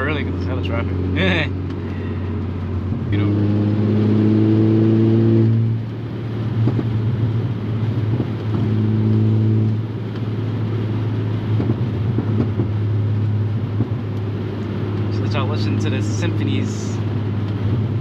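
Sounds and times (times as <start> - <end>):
car engine and exhaust drone: 0.0 - 18.0.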